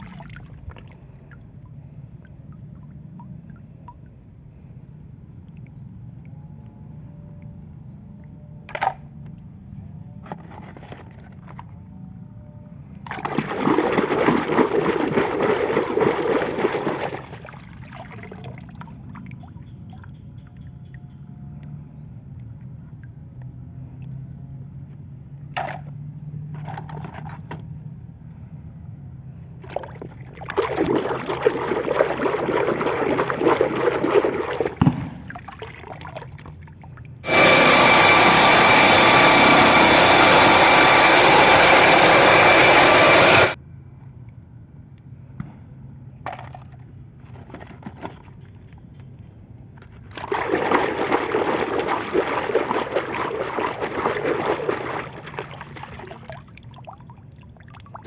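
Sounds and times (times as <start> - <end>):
water running and splashing: 13.3 - 19.0, 30.4 - 34.8, 50.2 - 56.9.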